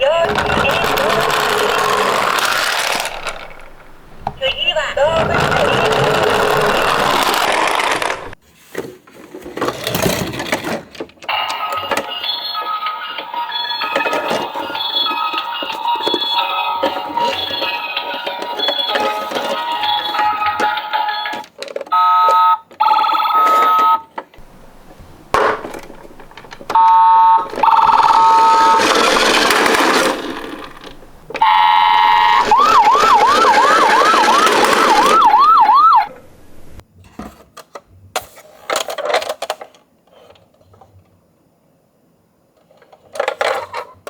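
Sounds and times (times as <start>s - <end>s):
toy cars rattling down a slope: 0.0s - 8.4s, 25.3s - 35.9s
two-tone siren: 26.8s - 29.0s, 31.4s - 36.1s
yelp siren: 31.4s - 36.1s.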